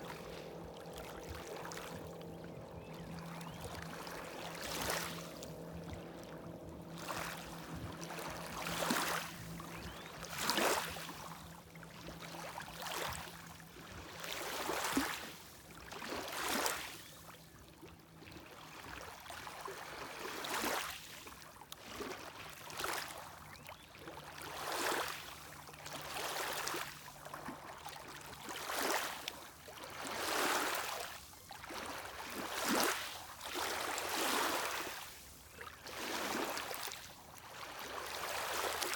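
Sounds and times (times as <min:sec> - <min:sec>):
waves lapping on shore: 0:00.0 - 0:38.9.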